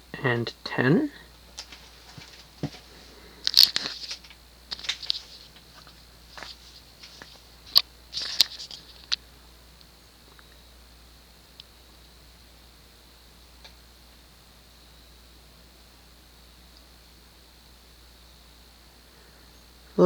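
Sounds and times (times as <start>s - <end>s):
ceiling fan humming: 0.0s - 20.0s
crackles and rustles: 1.3s - 9.2s.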